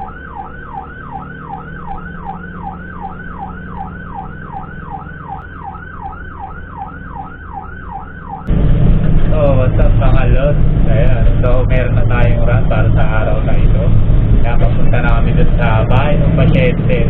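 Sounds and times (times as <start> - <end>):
siren in fast yelp: 0.0 - 8.5
low vehicle hum: 0.0 - 17.0.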